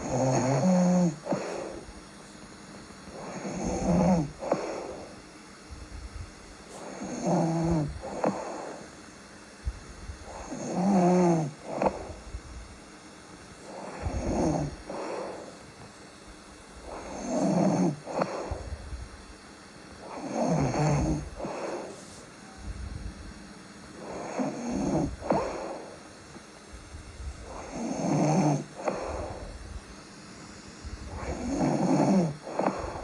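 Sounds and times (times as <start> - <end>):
person snoring: 0.0 - 1.9, 3.1 - 5.2, 6.8 - 8.9, 10.2 - 12.3, 13.7 - 15.6, 16.8 - 18.8, 20.0 - 22.0, 24.0 - 26.0, 27.4 - 29.6, 31.0 - 33.0.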